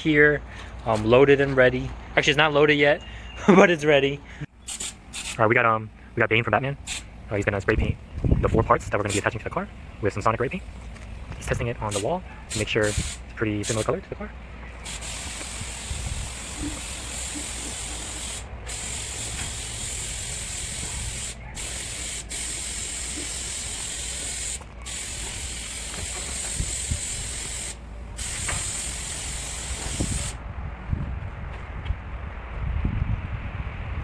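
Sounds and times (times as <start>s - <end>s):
paint spray gun hissing: 4.6s - 5.4s, 6.8s - 7.1s, 11.9s - 13.9s, 14.8s - 30.4s.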